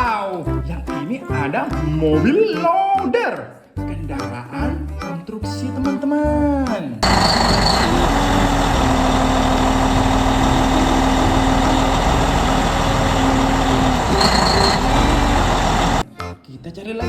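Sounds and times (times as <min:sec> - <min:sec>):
wheel loader engine running: 0:07.0 - 0:16.0.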